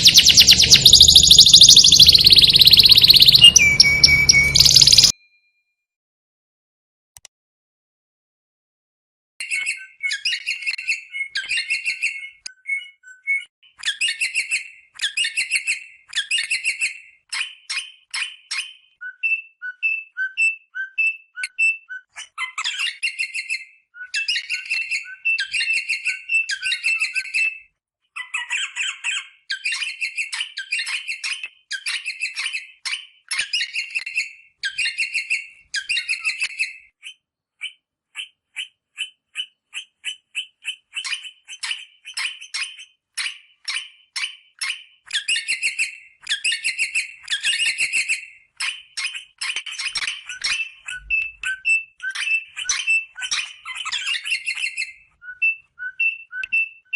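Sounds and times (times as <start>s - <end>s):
parrot chattering calls: 0.0s - 5.1s.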